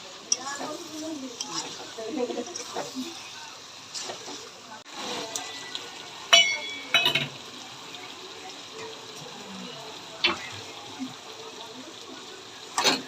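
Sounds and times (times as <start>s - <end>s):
meat sizzling in a pan: 0.0s - 13.0s
metal spoon clinking on pan: 6.3s - 7.4s.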